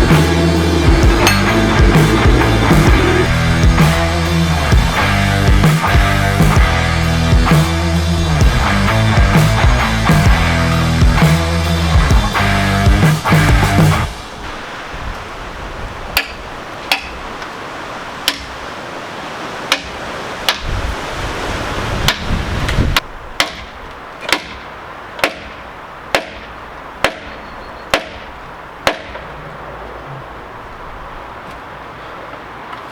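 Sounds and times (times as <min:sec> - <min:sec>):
ringing hammer blows: 0:00.0 - 0:04.2.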